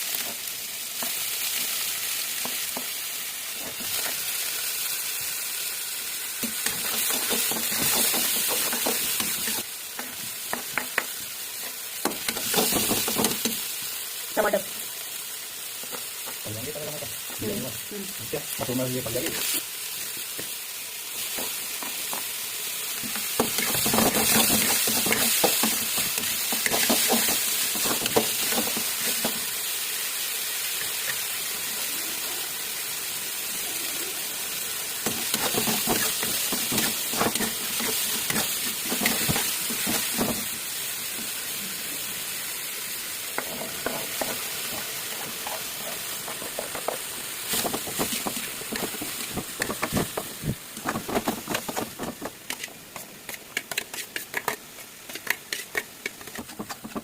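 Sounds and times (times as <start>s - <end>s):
vegetables sizzling in a pan: 0.0s - 57.0s
stirring knocks and scrapes on pan: 6.4s - 13.6s, 23.0s - 29.5s, 35.0s - 40.5s, 43.3s - 57.0s.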